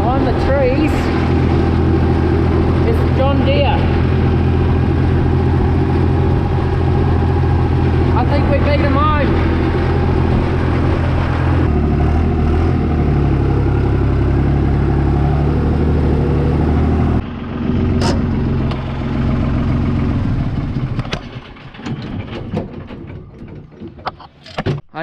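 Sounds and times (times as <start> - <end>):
vehicle engine running: 0.0 - 22.6
clicks and knocks: 20.8 - 24.9.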